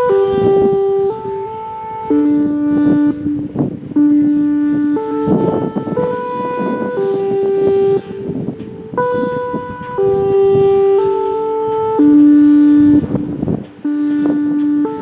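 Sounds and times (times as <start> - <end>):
horn-like warning signal notes: 0.0 - 15.0
steady rumble: 0.0 - 15.0.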